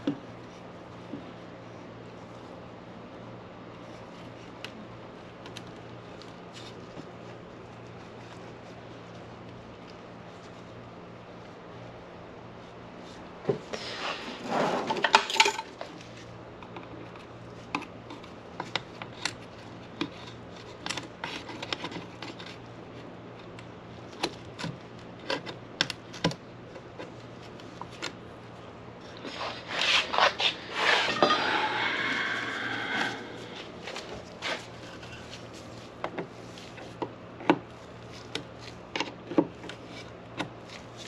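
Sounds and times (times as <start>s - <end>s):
scraping and rattling: 14.2s - 15.8s, 29.2s - 35.8s.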